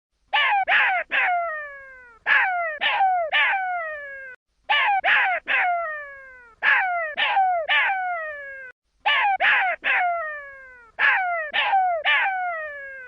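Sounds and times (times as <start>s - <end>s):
jackal pup crying: 2.2s - 13.0s.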